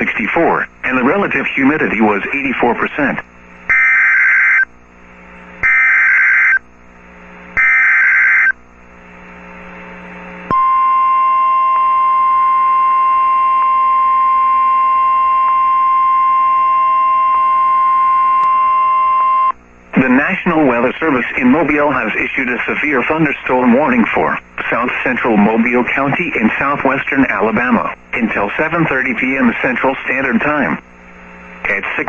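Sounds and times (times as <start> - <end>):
radio hiss: 0.0 - 10.5, 19.8 - 32.0
steady alarm tone: 3.7 - 4.7, 5.6 - 6.6, 7.6 - 8.6, 10.5 - 19.6.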